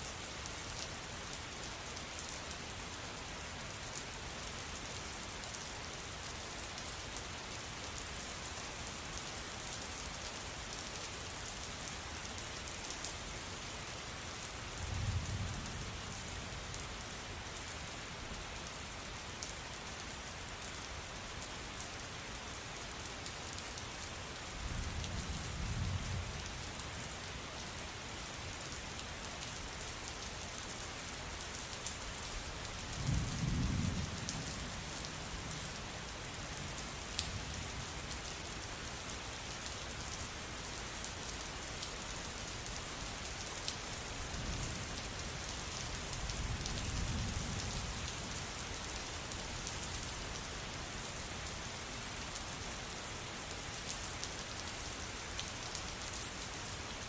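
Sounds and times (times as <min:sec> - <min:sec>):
steady rain hiss: 0:00.0 - 0:57.0
low thunder rumbles: 0:33.0 - 0:34.8.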